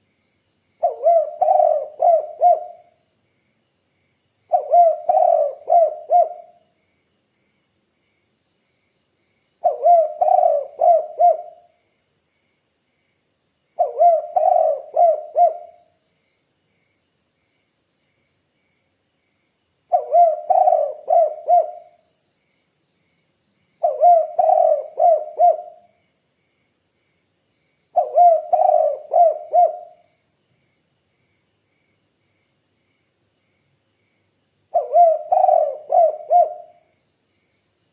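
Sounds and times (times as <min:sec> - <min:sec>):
dove cooing: 0:00.8 - 0:03.0, 0:04.5 - 0:06.6, 0:09.6 - 0:11.7, 0:13.8 - 0:15.9, 0:19.9 - 0:22.0, 0:23.8 - 0:25.9, 0:28.0 - 0:30.0, 0:34.7 - 0:36.8.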